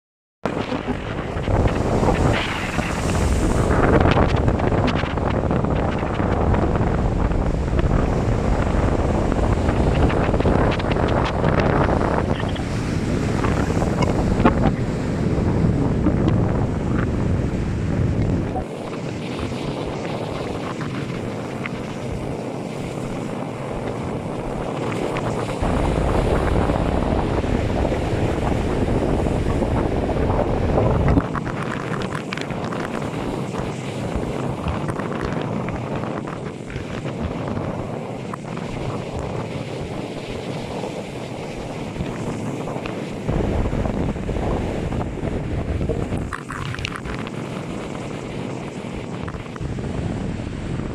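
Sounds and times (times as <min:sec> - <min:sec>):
wind buffeting microphone: 0:00.4 - 0:50.9
sea surf: 0:00.5 - 0:50.9.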